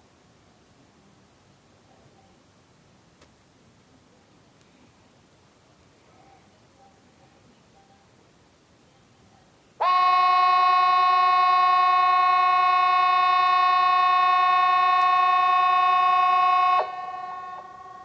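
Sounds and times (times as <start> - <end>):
steady warning siren blast: 9.8 - 18.0.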